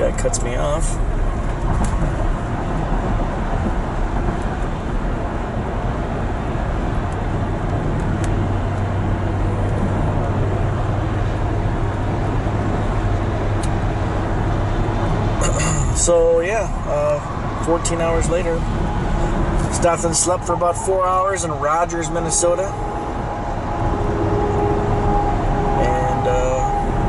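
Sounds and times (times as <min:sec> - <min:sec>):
vehicle road and engine noise: 0:00.0 - 0:27.0
low steady drone: 0:08.2 - 0:27.0.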